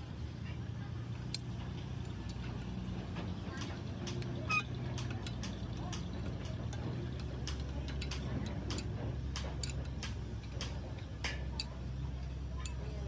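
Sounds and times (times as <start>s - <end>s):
metallic clicks and taps: 3.6s - 11.8s.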